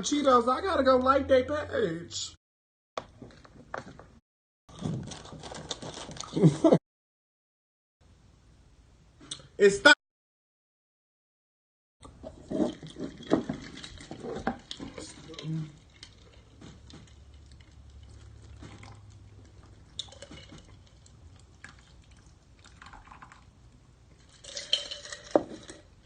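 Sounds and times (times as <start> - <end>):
liquid drips and splashes: 12.9 - 25.8.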